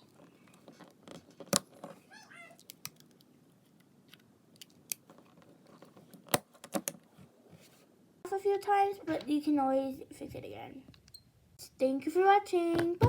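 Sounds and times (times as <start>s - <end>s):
rubber and plastic snapping: 0.5s - 1.9s, 6.1s - 7.0s.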